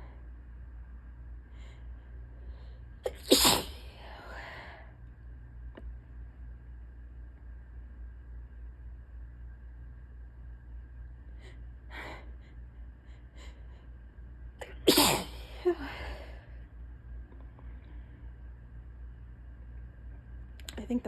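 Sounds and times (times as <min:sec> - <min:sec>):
person sneezing loudly: 0:03.1 - 0:03.8, 0:14.6 - 0:15.7.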